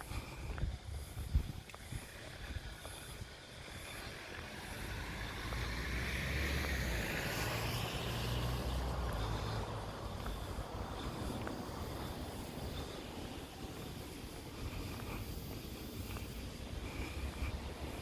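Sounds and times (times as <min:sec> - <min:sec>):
wind on microphone: 0:00.0 - 0:03.6
vehicle engine hum: 0:00.0 - 0:18.0.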